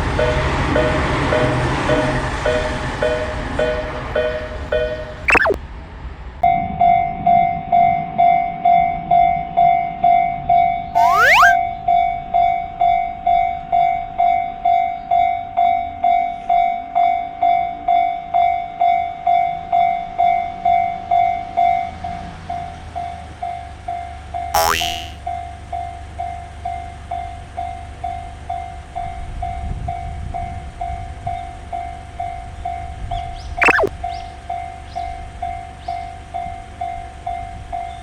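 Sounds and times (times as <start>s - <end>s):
short rising whistle: 5.3s - 5.6s, 11.0s - 11.6s, 33.6s - 33.9s.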